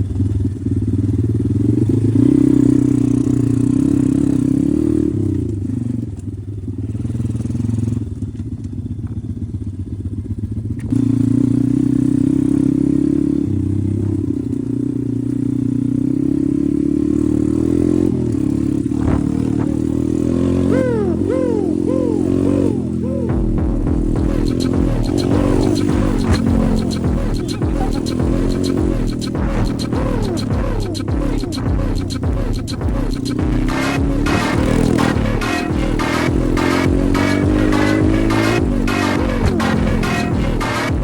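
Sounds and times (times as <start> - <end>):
pit bike engine revving: 16.0 - 41.0
warbling tone: 19.0 - 41.0.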